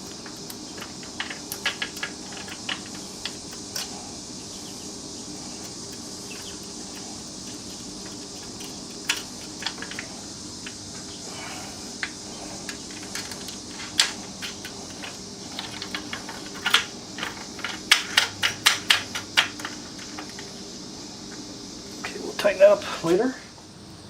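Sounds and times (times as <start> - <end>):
metal screws clicking and tapping: 0.0 - 4.0, 5.6 - 10.8, 12.0 - 20.5
steady hum: 0.0 - 24.0.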